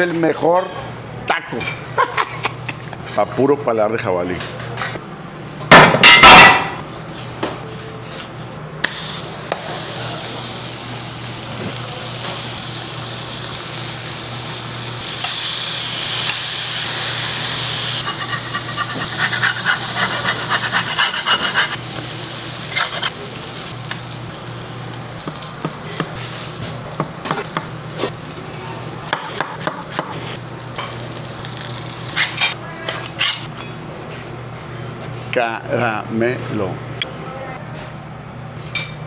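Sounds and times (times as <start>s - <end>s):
food sizzling on a griddle: 8.8s - 33.5s
spatula taps and scrapes: 25.2s - 26.3s, 29.1s - 30.4s.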